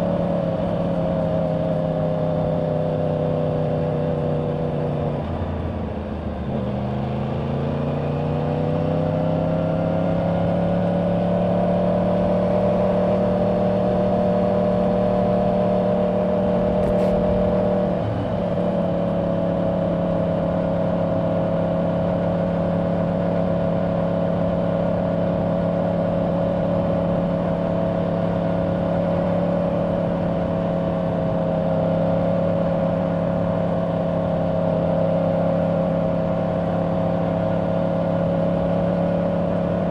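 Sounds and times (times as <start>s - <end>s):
motorcycle engine accelerating: 6.8s - 39.9s
wind rushing: 16.5s - 18.5s.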